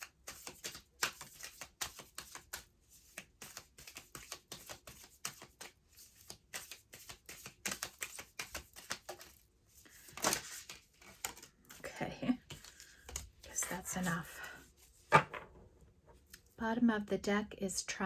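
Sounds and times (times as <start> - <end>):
cards being shuffled: 0.1 - 11.8, 12.4 - 14.2.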